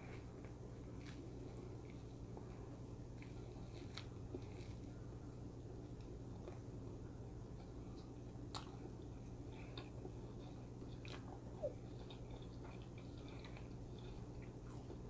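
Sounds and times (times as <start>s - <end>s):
person chewing: 7.6s - 15.0s.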